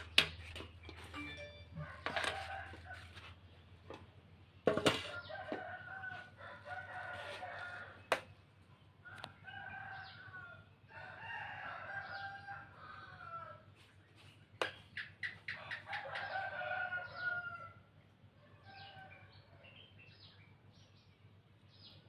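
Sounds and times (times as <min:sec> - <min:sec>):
rooster crowing: 0:01.7 - 0:03.4, 0:04.9 - 0:08.1, 0:09.0 - 0:13.7, 0:15.5 - 0:17.8.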